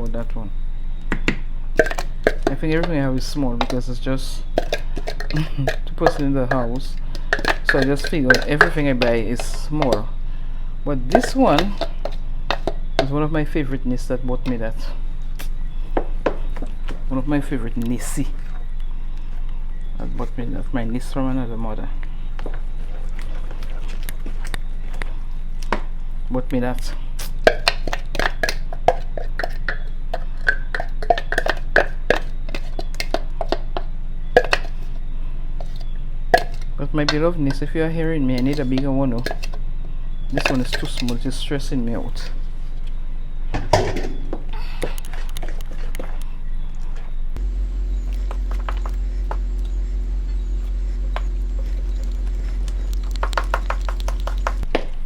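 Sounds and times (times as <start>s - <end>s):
steady low hum: 0.0s - 27.5s, 42.2s - 55.0s
kitchen utensils knocking and clinking: 4.6s - 10.0s, 11.1s - 13.1s, 47.4s - 54.7s
electric blender motor running: 47.4s - 54.6s
clicks and knocks of contents: 47.4s - 54.7s.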